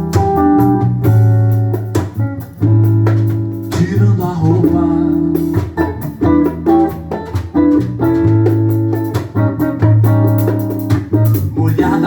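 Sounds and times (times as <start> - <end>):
plucked guitar notes: 0.0 - 12.0
sustained bass notes: 0.0 - 12.0.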